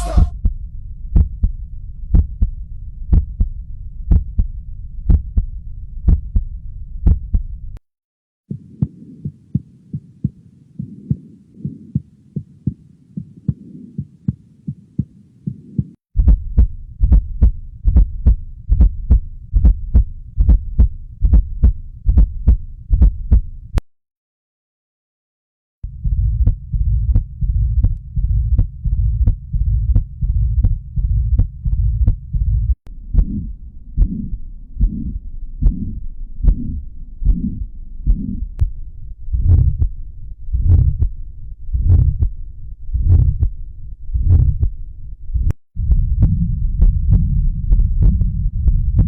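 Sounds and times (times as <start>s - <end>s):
heartbeat lub-dub: 0.0s - 7.6s, 8.5s - 23.6s, 25.8s - 49.0s
low hum: 0.0s - 7.8s, 25.8s - 49.0s.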